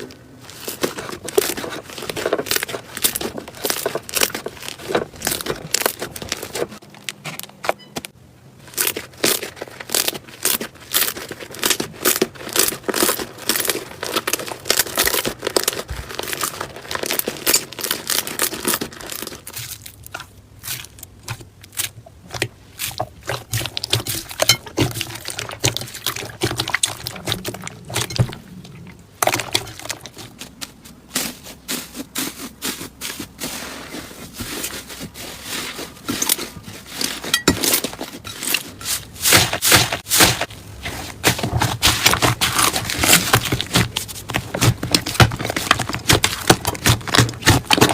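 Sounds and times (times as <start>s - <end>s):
slime squeezed crackling and popping: 8.6s - 30.4s.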